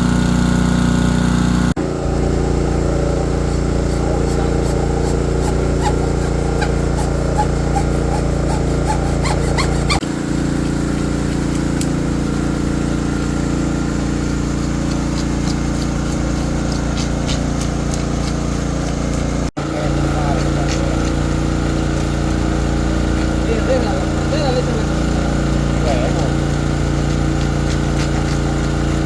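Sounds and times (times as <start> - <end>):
small engine running: 0.0 - 29.0
hand tools scraping and ticking: 3.5 - 10.0, 14.3 - 19.4, 26.1 - 29.0.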